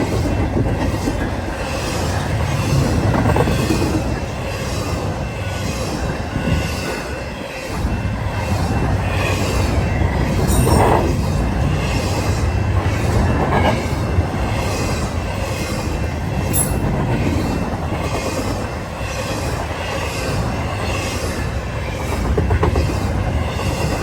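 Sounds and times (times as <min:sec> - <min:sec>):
freight train wheels rumbling: 0:00.0 - 0:24.0.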